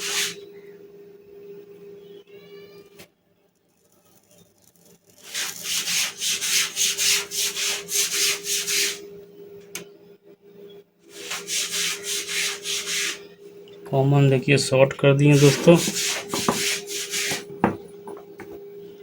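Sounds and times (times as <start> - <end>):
rapid back-and-forth scraping: 4.8 - 9.0, 11.1 - 13.4, 14.0 - 18.4.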